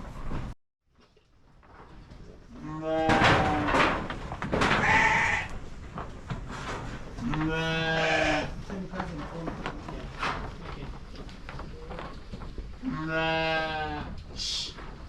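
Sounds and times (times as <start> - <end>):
sheep bleating: 4.8 - 5.5, 7.2 - 8.6, 12.8 - 14.2.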